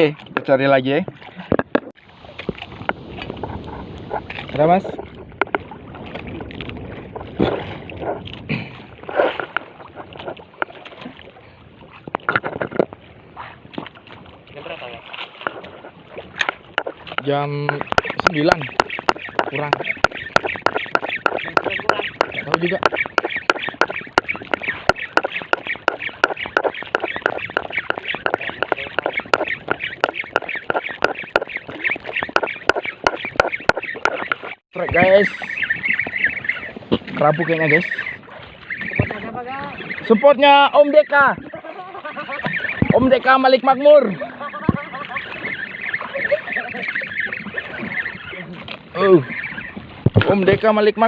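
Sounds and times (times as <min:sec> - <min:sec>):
water noise: 0:00.0 - 0:51.0
sharp knocks and clicks: 0:01.5 - 0:03.3, 0:04.2 - 0:05.7, 0:16.4 - 0:35.1
strong wind: 0:02.1 - 0:40.1.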